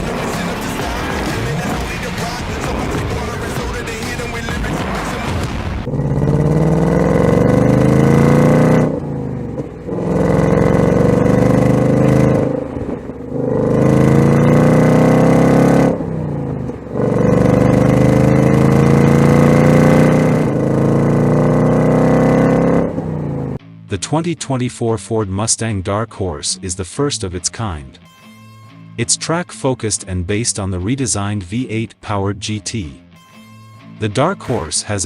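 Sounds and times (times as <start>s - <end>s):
car engine accelerating hard: 0.0s - 23.6s.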